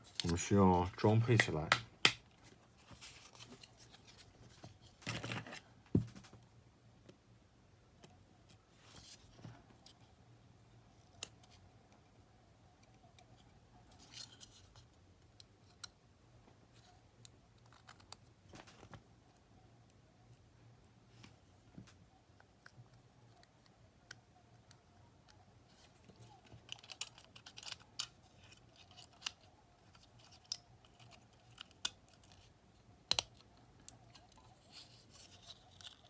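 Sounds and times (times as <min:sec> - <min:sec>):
small plastic parts clicking: 0:26.1 - 0:32.5, 0:33.1 - 0:36.0.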